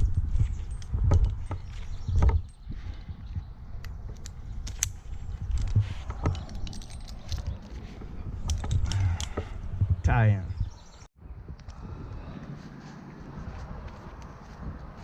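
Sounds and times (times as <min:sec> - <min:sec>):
climbing gear knocks and clinks: 0:00.0 - 0:09.6.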